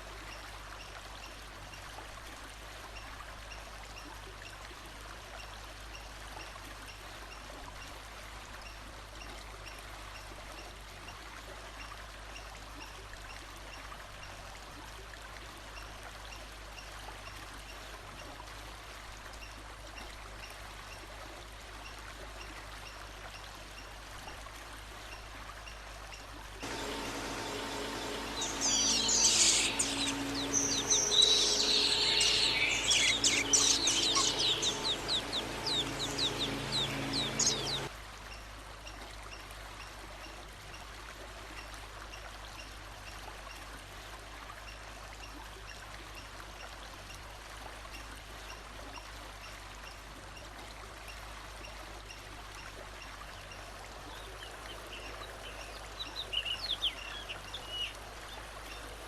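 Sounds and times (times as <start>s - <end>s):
background hiss: 26.6s - 37.9s
faint high chirps: 26.6s - 37.9s
songbird singing trills: 26.6s - 37.9s, 54.1s - 58.0s.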